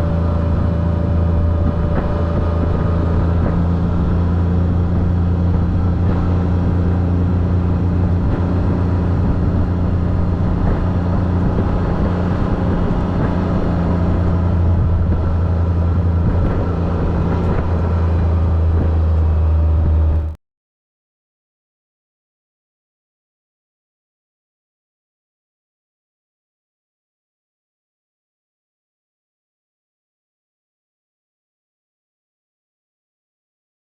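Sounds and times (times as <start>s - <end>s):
atv engine droning: 0.0s - 20.4s.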